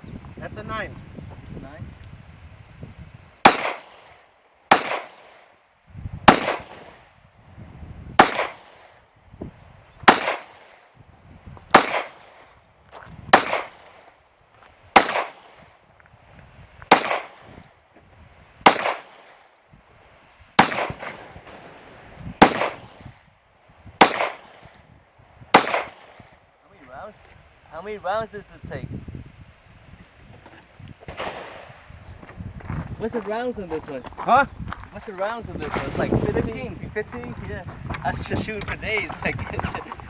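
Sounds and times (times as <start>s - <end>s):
pistol shots: 3.4s - 5.5s, 6.3s - 7.0s, 8.2s - 9.0s, 10.0s - 10.9s, 11.7s - 12.5s, 13.3s - 14.0s, 14.9s - 15.7s, 16.9s - 17.6s, 18.6s - 19.4s, 20.6s - 23.0s, 24.0s - 24.8s, 25.5s - 26.3s, 31.1s - 31.8s.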